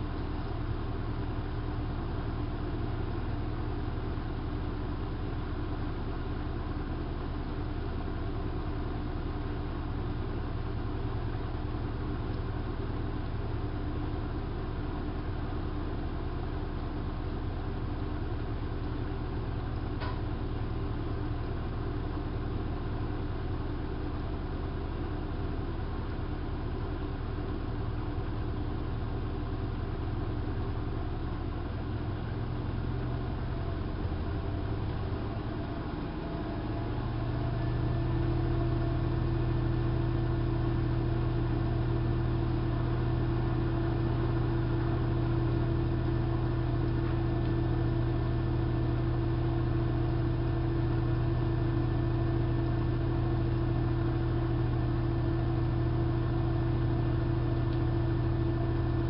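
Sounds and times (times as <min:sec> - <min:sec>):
washing machine spinning: 0:26.4 - 0:59.0.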